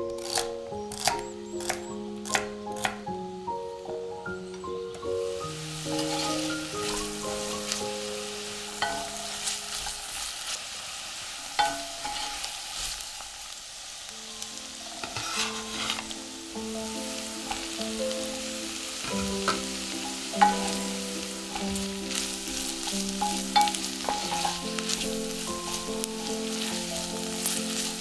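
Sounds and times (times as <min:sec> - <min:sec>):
vegetables sizzling in a pot: 0:00.0 - 0:03.3, 0:03.9 - 0:28.0
soft background music: 0:00.0 - 0:10.4, 0:14.2 - 0:28.0
spoon scraping and knocking pot: 0:11.6 - 0:12.5, 0:15.0 - 0:16.2, 0:19.0 - 0:28.0.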